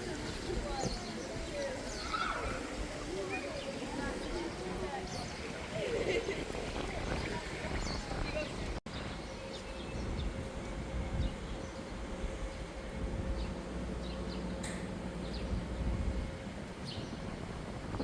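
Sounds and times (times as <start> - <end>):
low mechanical rumble: 8.6 - 18.0.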